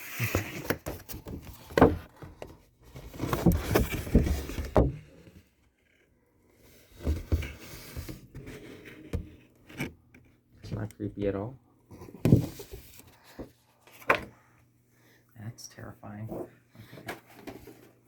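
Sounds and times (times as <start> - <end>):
cardboard and plastic rustling: 0.0 - 6.0, 11.9 - 14.4, 16.4 - 18.0.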